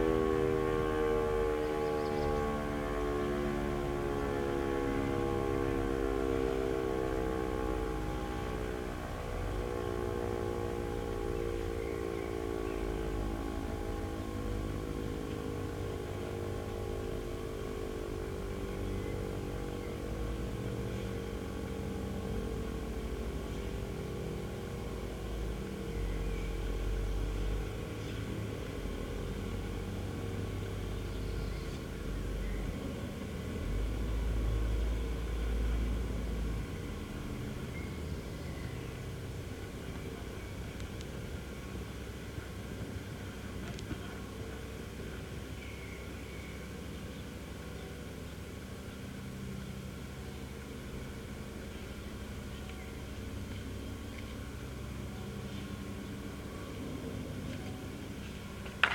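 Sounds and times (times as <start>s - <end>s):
electric siren winding down: 0.0s - 30.5s
diesel engine of wheel loader: 0.0s - 58.9s.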